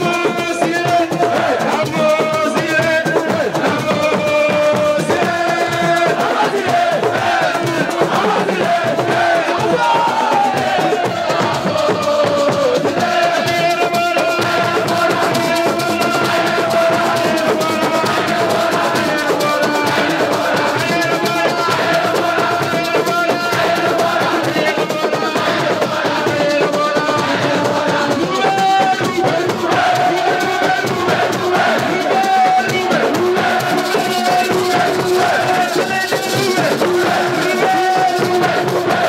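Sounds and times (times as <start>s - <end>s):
crowd singing: 0.0s - 39.0s
fast drumming and percussion: 0.0s - 39.0s.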